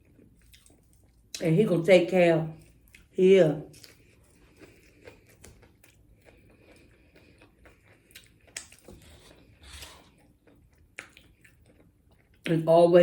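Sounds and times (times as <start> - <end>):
chewing food: 0.0 - 1.4, 2.5 - 12.6
mouth clicks and smacks: 8.1 - 9.0.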